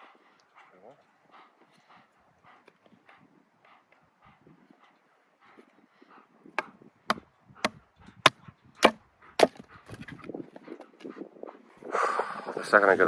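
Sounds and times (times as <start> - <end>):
baton striking blade through wood: 6.6 - 9.6.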